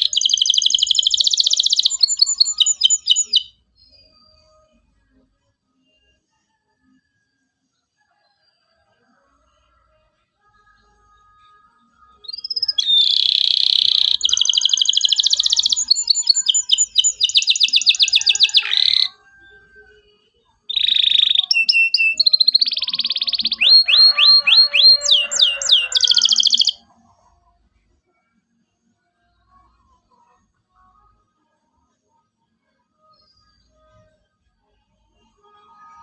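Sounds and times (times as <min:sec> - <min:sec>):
canary singing trills: 0:00.0 - 0:04.8, 0:12.0 - 0:27.2.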